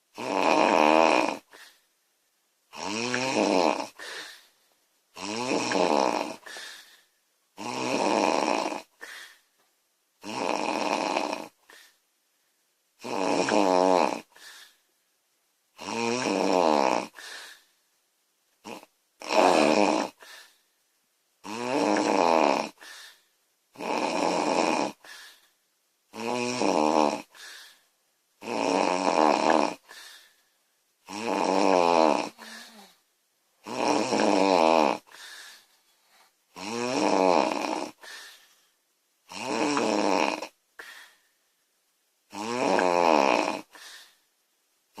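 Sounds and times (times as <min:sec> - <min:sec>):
woman snoring loudly: 0:00.2 - 0:01.7, 0:02.7 - 0:04.3, 0:05.2 - 0:06.7, 0:07.6 - 0:09.2, 0:10.2 - 0:11.6, 0:13.0 - 0:14.4, 0:15.8 - 0:17.3, 0:18.6 - 0:20.4, 0:21.4 - 0:22.9, 0:23.8 - 0:25.1, 0:26.1 - 0:27.5, 0:28.4 - 0:30.0, 0:31.0 - 0:33.0, 0:33.6 - 0:35.2, 0:36.6 - 0:38.1, 0:39.3 - 0:40.6, 0:42.3 - 0:43.8.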